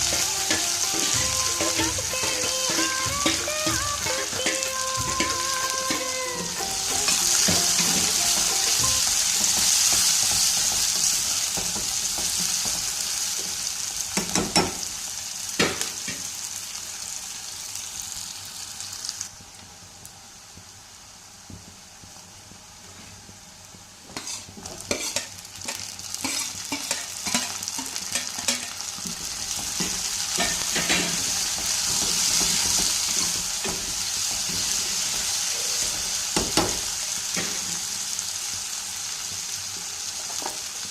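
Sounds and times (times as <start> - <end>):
spoon knocking against pan: 0.0 - 12.9, 24.2 - 37.6
food sizzling in oil: 0.0 - 40.9.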